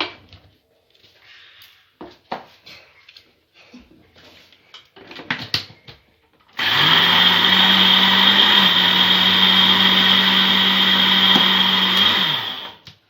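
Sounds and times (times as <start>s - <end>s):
electric mixer running: 6.6s - 12.9s.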